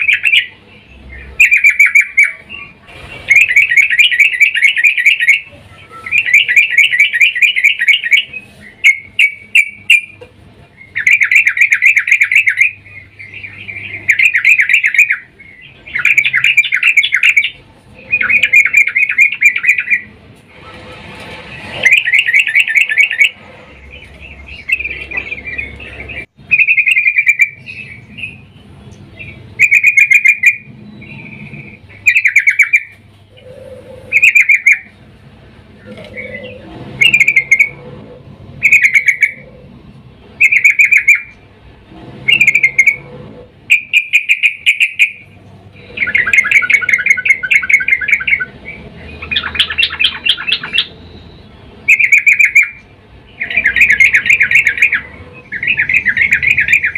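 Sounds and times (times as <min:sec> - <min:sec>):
bulbul calling: 0:00.0 - 0:20.2, 0:21.6 - 0:35.0, 0:35.8 - 0:37.8, 0:38.6 - 0:39.6, 0:40.4 - 0:41.4, 0:42.2 - 0:43.1, 0:43.7 - 0:56.9.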